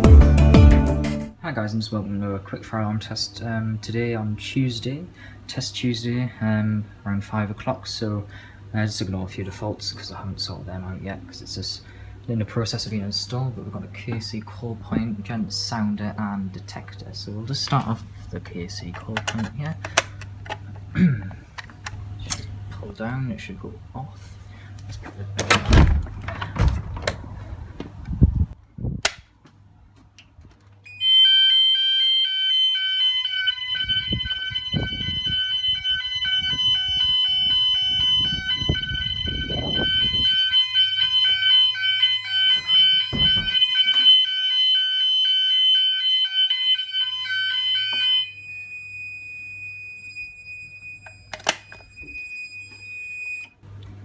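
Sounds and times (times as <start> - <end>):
pulsing fire alarm tone: 30.9 - 53.5.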